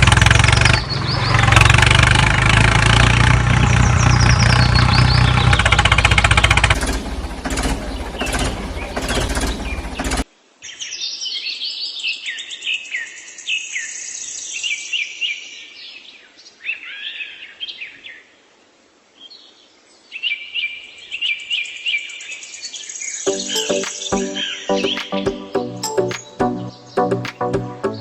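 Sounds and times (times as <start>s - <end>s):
loud mechanical noise: 0.0s - 10.2s
songbirds chirping: 0.2s - 1.8s, 3.4s - 6.2s, 7.2s - 28.0s.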